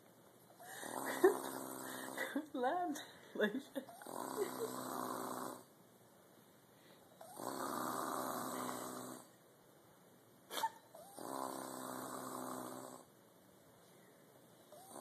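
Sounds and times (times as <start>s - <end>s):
person snoring: 0.6s - 2.4s, 3.9s - 5.7s, 7.2s - 9.3s, 10.6s - 13.1s, 14.7s - 15.0s.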